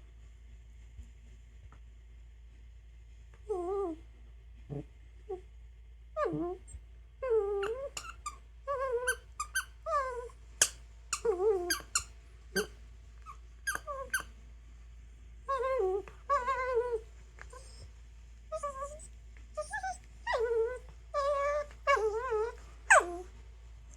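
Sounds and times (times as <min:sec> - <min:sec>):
squeaky toy squeaking: 0:07.6 - 0:14.3.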